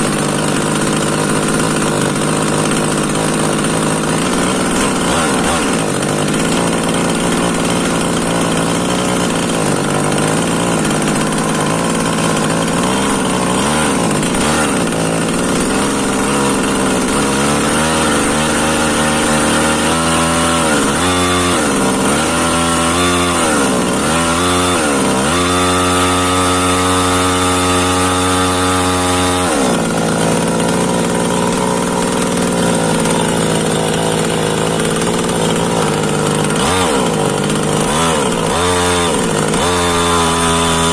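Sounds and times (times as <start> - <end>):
small chainsaw engine revving: 0.0 - 40.9.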